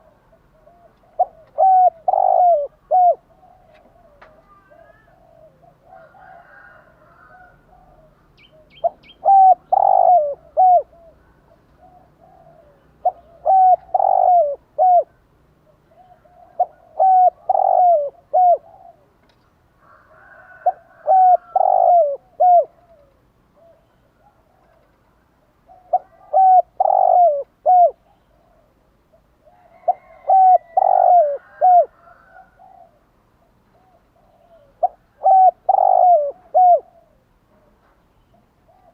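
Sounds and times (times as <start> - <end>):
dove cooing: 0.0 - 19.2, 19.8 - 38.9
small birds chirping: 7.7 - 19.5.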